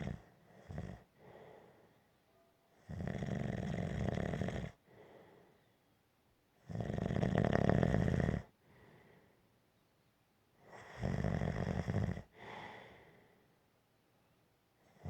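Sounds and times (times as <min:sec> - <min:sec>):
gentle snoring: 0:00.0 - 0:01.4, 0:02.8 - 0:04.8, 0:06.6 - 0:08.5, 0:10.7 - 0:12.6
soft breath: 0:01.1 - 0:02.2, 0:04.8 - 0:05.8, 0:08.6 - 0:09.5, 0:12.2 - 0:13.7.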